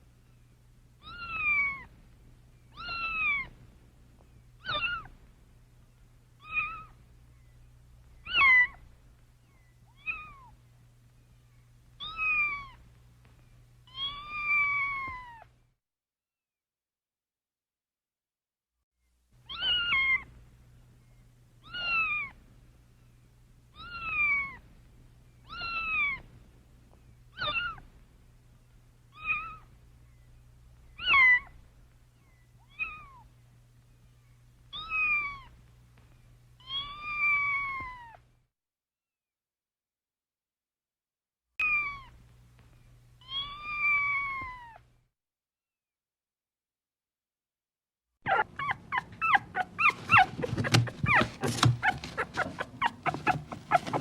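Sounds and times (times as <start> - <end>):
faint low hum: 0.0 - 15.7, 19.2 - 38.4, 41.6 - 45.0, 48.3 - 54.0
kitten meowing: 27.4 - 27.8.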